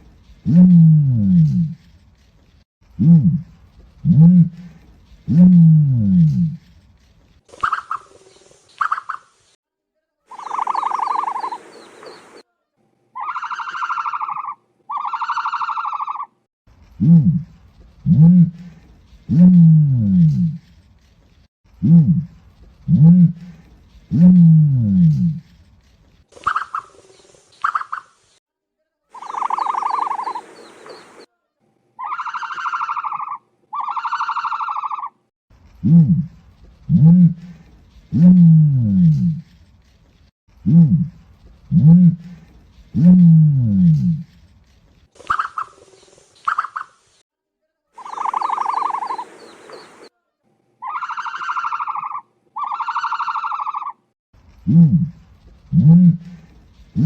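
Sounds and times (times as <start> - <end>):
animal warbling trills: 29.2 - 31.0, 48.0 - 49.8.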